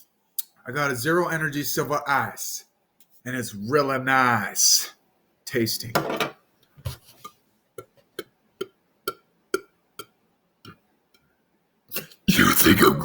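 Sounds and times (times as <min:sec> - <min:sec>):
man gulping a drink: 0:11.9 - 0:13.0.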